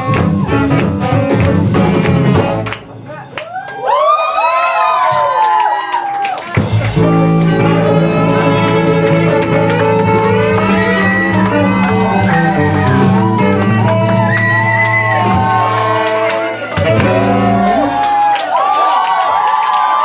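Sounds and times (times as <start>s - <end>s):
live band playing: 0.0s - 3.4s, 6.4s - 18.3s.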